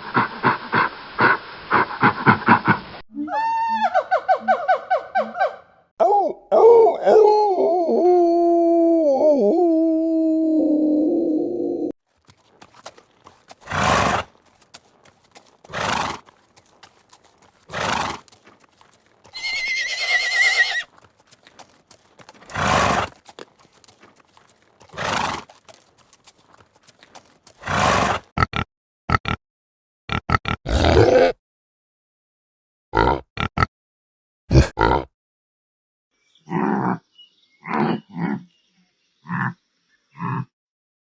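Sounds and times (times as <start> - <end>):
horse snorting blasts: 13.6 - 14.4, 15.6 - 16.2, 22.5 - 23.2, 27.6 - 28.5, 30.7 - 31.4, 34.5 - 35.1
horse whinnying: 19.3 - 20.9, 22.5 - 23.2.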